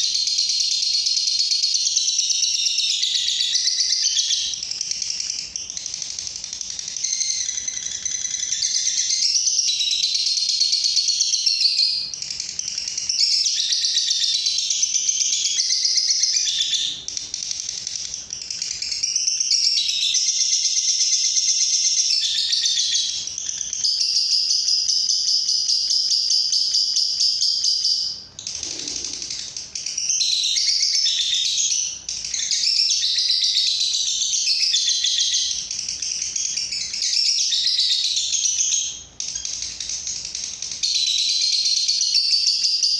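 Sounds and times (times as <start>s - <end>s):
bird chirping and trilling: 0.0s - 42.9s.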